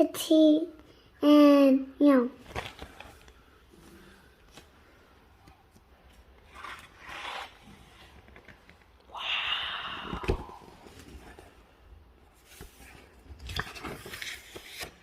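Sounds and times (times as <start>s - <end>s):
packaging rustling and scraping: 2.4s - 4.8s, 6.4s - 8.9s, 12.4s - 15.0s.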